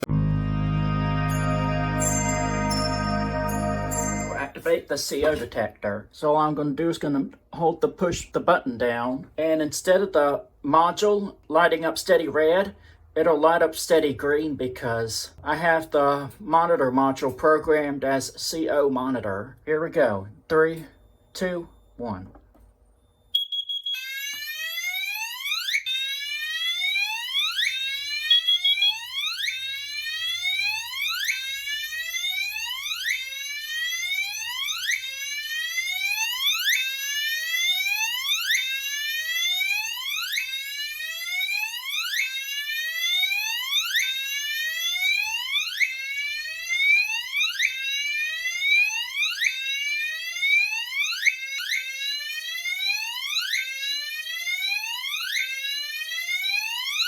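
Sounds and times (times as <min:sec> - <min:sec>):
fire alarm whoop tone: 0:00.0 - 0:04.6, 0:23.3 - 0:57.0
steady high beep: 0:00.0 - 0:04.6.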